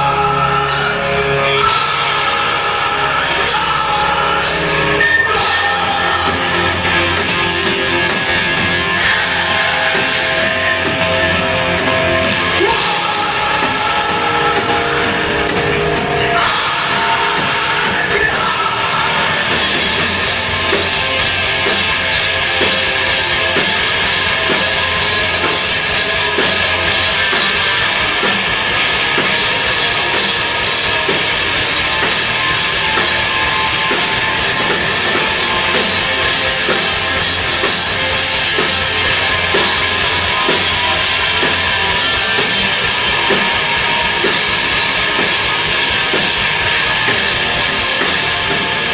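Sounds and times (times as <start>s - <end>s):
heavy rock band playing: 0.0s - 48.9s.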